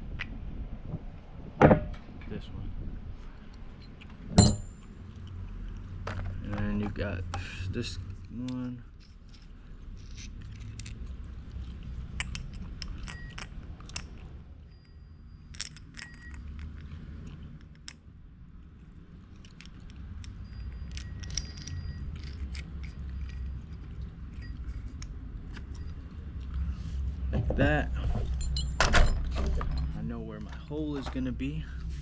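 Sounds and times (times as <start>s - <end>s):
steady low hum: 0.0s - 32.0s
metal pieces clinking: 9.0s - 11.0s, 12.2s - 16.8s, 19.3s - 26.0s.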